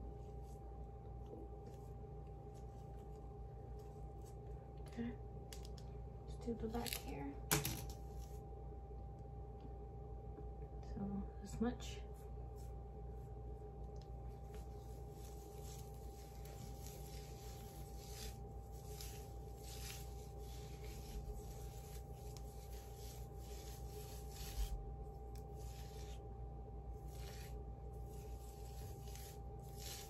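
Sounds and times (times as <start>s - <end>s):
fingers swishing through wet hair: 14.4s - 26.3s, 26.9s - 30.0s.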